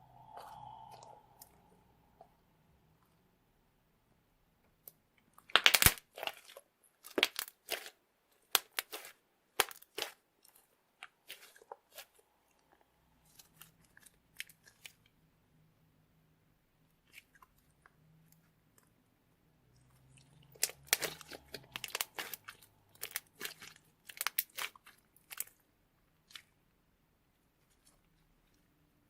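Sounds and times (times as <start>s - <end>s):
slime crackling clicks and pops: 5.5s - 6.4s, 20.6s - 24.7s.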